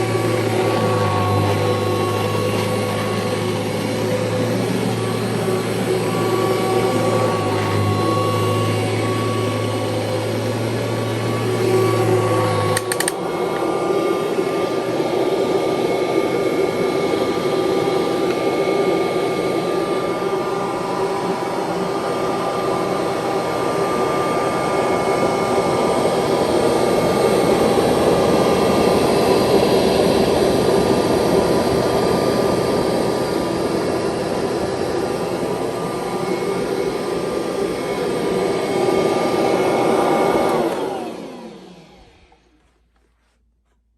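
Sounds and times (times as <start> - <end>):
vacuum cleaner running: 0.0 - 43.4
click: 12.7 - 13.2.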